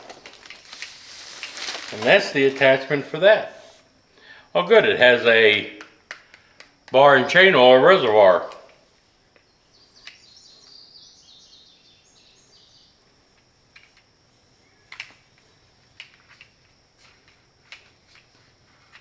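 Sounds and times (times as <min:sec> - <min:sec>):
faint bird chirping: 0:09.4 - 0:13.3, 0:14.5 - 0:16.1.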